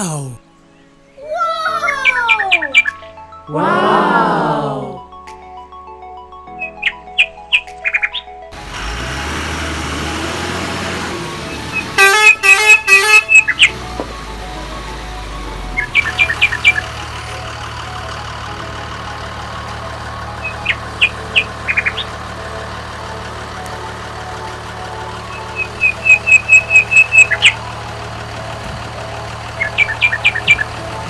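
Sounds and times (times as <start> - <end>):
birds chirping: 0.0 - 3.2
engine humming: 8.6 - 31.0.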